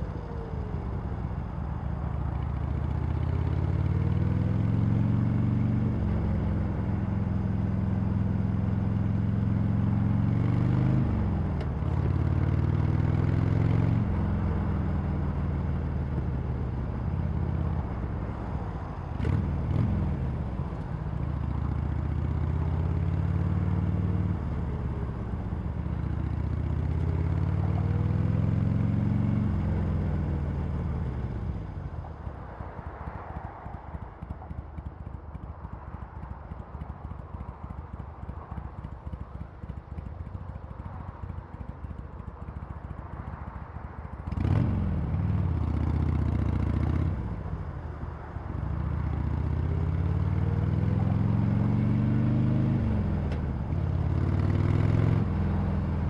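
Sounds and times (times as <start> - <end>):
motorcycle engine revving through gears: 19.1 - 25.2, 44.3 - 47.4, 48.7 - 56.0.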